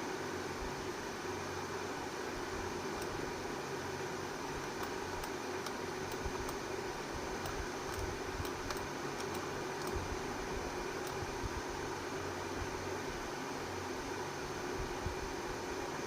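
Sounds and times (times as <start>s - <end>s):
fan hissing and humming: 0.0s - 16.0s.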